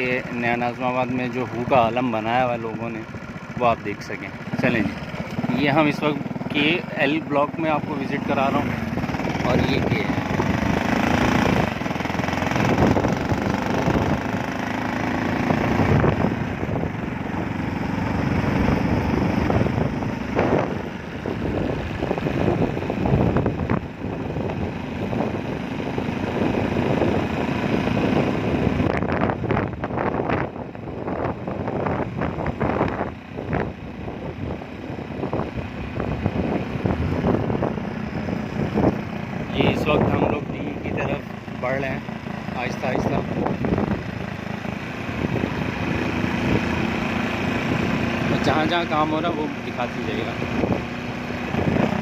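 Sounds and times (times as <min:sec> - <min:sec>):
road noise: 0:00.0 - 0:52.0
vehicle engine running: 0:00.0 - 0:52.0
wind buffeting microphone: 0:07.7 - 0:52.0.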